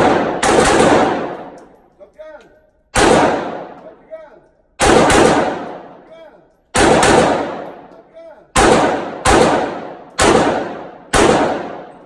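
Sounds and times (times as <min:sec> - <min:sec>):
pistol shots with echo: 0:00.0 - 0:01.8, 0:02.9 - 0:04.0, 0:04.8 - 0:06.1, 0:06.7 - 0:12.0.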